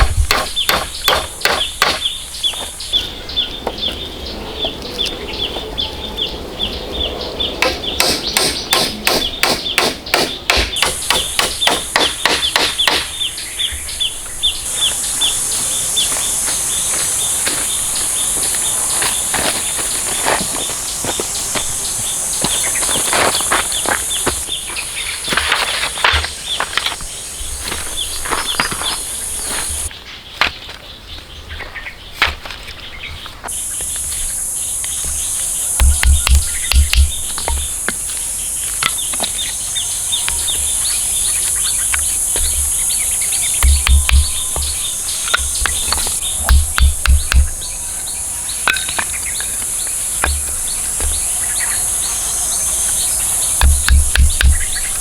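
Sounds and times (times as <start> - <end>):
insect chorus buzzing: 0.0 - 29.9, 32.9 - 55.0
heavy low thuds: 35.0 - 37.9, 42.0 - 47.7, 53.6 - 55.0
knocks and taps of hand work: 35.8 - 37.6, 43.6 - 44.8, 53.6 - 54.6.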